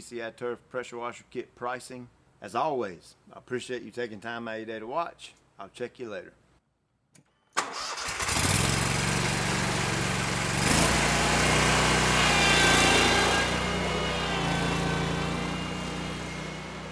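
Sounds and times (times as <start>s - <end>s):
lawn mower engine running: 7.6s - 16.9s.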